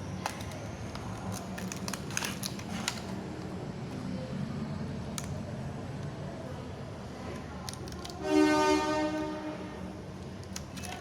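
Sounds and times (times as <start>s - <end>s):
packaging clicks and crinkling: 0.1s - 3.6s, 7.4s - 8.2s, 10.2s - 11.0s.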